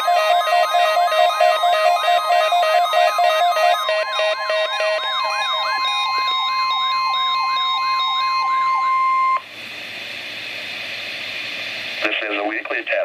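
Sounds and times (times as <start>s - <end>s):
beeping: 0.0s - 9.4s
whooping radio alarms: 0.0s - 9.4s
steady warning alarm tone: 0.0s - 9.5s
radio hiss: 9.5s - 13.0s.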